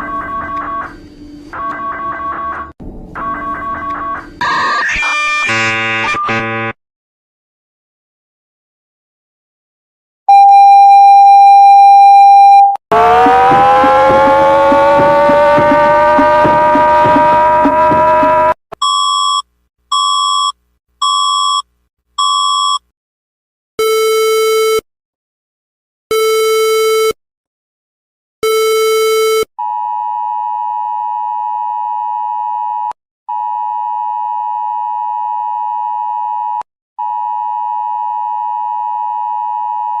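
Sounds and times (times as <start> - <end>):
low buzzy alert tones: 5.4 - 6.8.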